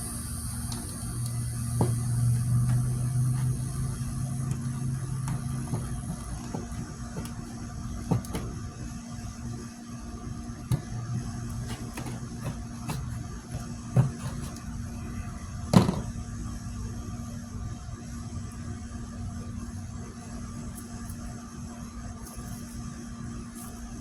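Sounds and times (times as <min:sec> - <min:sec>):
steady low hum: 0:00.0 - 0:24.0
hand tool knocking on clay: 0:01.8 - 0:03.6.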